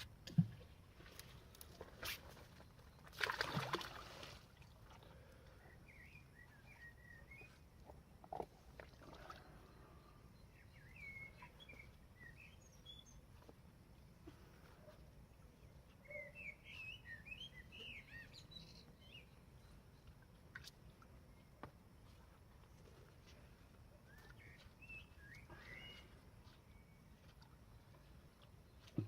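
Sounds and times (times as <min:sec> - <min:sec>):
small birds chirping: 0:05.1 - 0:08.5, 0:09.4 - 0:29.0.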